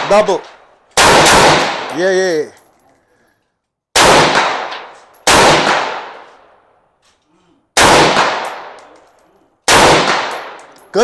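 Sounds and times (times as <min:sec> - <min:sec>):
rifle shots echoing: 0:00.0 - 0:02.3, 0:03.9 - 0:06.6, 0:07.8 - 0:09.0, 0:09.6 - 0:10.8.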